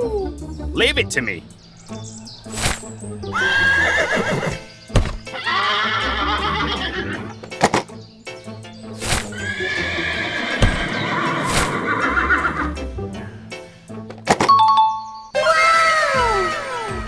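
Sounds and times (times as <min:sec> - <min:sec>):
background music: 0:00.0 - 0:17.0
horse-like whinny: 0:03.4 - 0:04.6
sharp knocks: 0:04.9 - 0:05.3.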